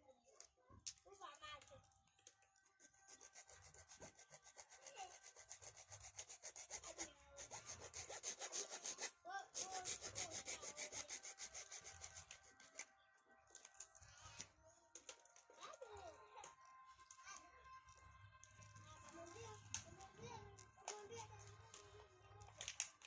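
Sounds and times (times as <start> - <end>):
hand saw cutting: 3.0 - 12.8.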